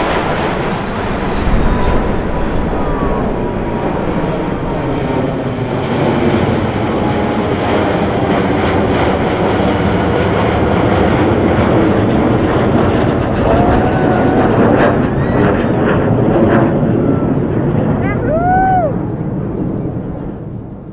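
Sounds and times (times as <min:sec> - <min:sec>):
jet engines roaring: 0:00.0 - 0:20.9.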